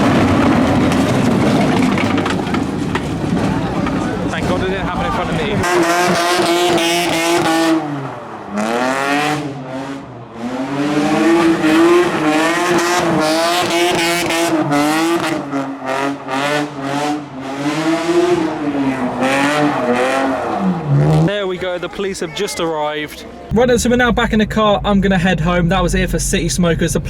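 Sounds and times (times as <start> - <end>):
car engine at high revs: 0.0 - 21.4.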